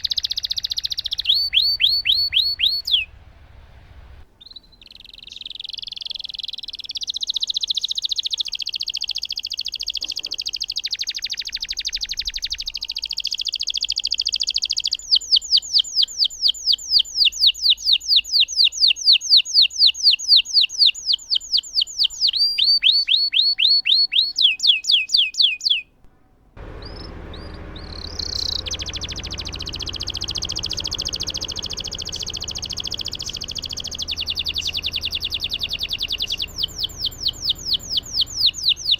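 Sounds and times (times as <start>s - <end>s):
background hiss: 0.0s - 4.9s
canary singing trills: 0.0s - 26.0s, 26.6s - 38.9s.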